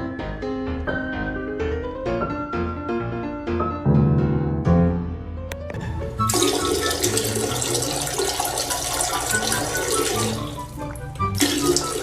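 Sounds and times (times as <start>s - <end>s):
background music: 0.0s - 12.0s
water running from tap: 6.2s - 12.0s.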